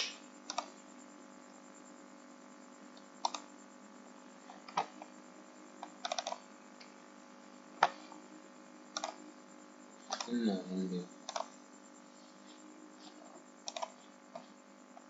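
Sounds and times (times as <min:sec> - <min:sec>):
faint steady hum: 0:00.0 - 0:15.0
keyboard and mouse clicks: 0:06.0 - 0:06.4, 0:09.0 - 0:09.2, 0:11.3 - 0:11.5, 0:13.7 - 0:14.4.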